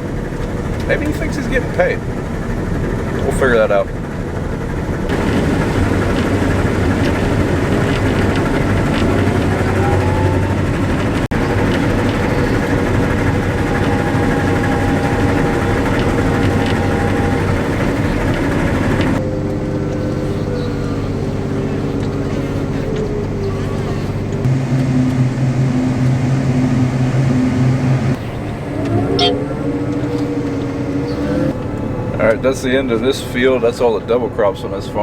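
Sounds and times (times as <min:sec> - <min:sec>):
engine hum: 0:00.0 - 0:35.0
threshing rush: 0:04.8 - 0:32.2.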